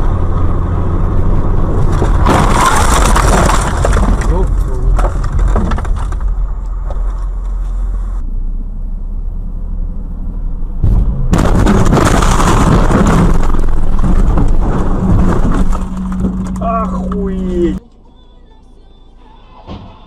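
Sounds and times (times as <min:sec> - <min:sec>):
engine and road rumble: 0:00.0 - 0:20.0
rough noise with crackles: 0:01.7 - 0:08.2, 0:10.8 - 0:17.8.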